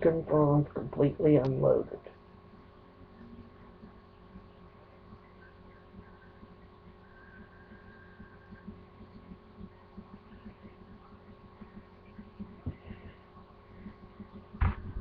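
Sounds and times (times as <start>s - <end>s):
faint electrical hum: 0.0s - 15.0s
soft low thuds: 14.2s - 15.0s.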